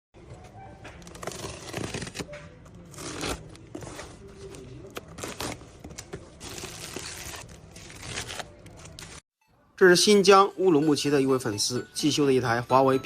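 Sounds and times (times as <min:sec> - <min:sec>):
crinkling and scraping handling noise: 0:00.4 - 0:09.2.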